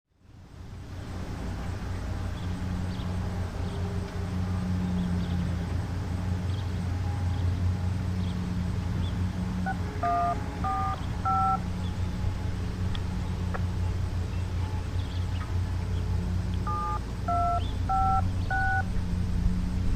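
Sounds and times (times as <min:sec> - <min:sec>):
low outdoor background hum: 0:00.1 - 0:19.9
dual-tone electronic beeps: 0:09.7 - 0:11.6, 0:16.7 - 0:18.9.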